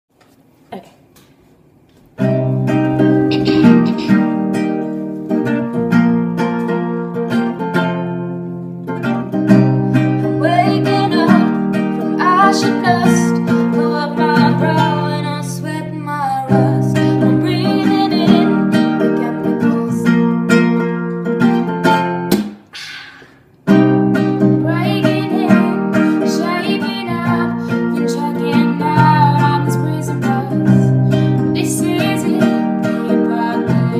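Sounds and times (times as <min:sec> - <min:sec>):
person singing: 0:02.2 - 0:04.4, 0:09.0 - 0:20.5, 0:24.2 - 0:33.9
acoustic guitar strumming: 0:02.2 - 0:33.9.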